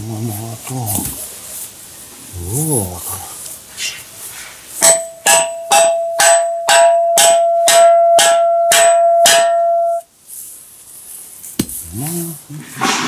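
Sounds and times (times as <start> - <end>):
hammer strikes: 4.8 - 10.1
metallic ringing: 4.8 - 10.1.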